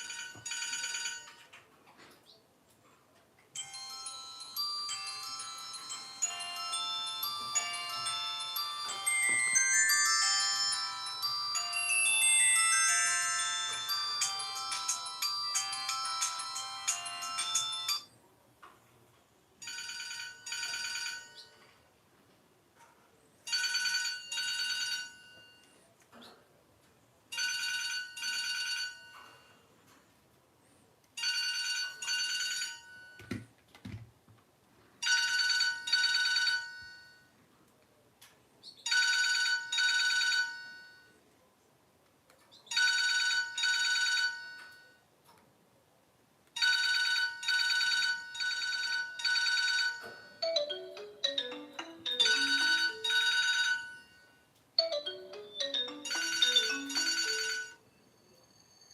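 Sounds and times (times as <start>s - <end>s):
mobile phone ringing: 0.0s - 1.5s, 3.6s - 18.1s, 19.6s - 21.8s, 23.5s - 25.7s, 27.3s - 29.6s, 31.2s - 33.4s, 35.0s - 37.3s, 38.9s - 41.2s, 42.7s - 45.0s, 46.6s - 58.9s.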